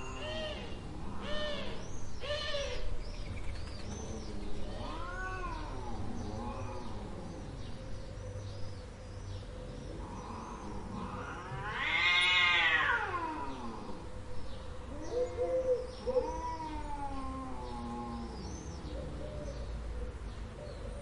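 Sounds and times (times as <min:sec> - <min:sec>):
cat meowing: 0:04.7 - 0:06.8, 0:11.2 - 0:13.8, 0:16.2 - 0:17.7.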